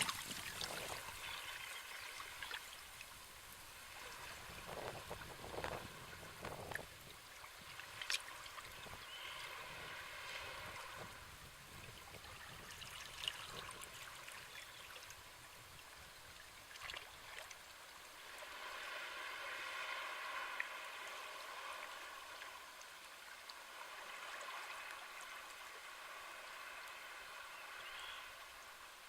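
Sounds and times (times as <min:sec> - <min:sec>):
sea waves washing in: 0:00.0 - 0:11.9, 0:18.1 - 0:29.0.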